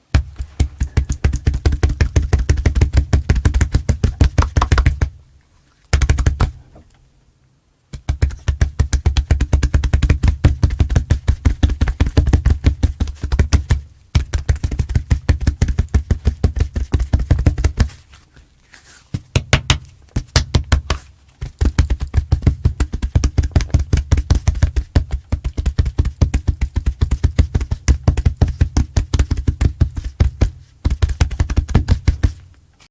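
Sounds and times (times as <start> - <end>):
hands thumping on chest: 0.1 - 5.2.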